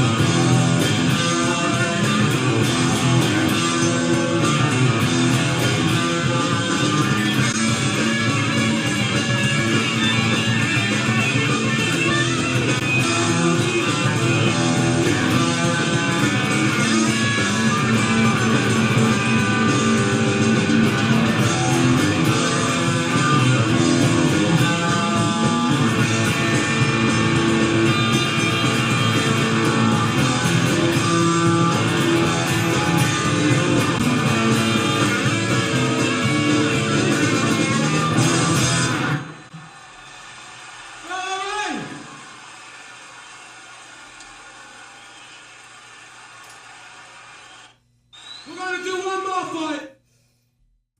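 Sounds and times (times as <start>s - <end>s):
bass guitar: 0.0s - 39.5s
electric guitar improvising: 0.0s - 47.6s
drums: 0.0s - 49.1s.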